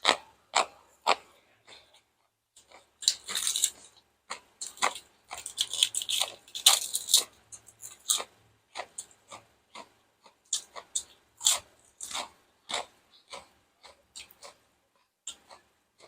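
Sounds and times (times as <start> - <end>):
person chewing crunchy food: 0.0 - 16.0.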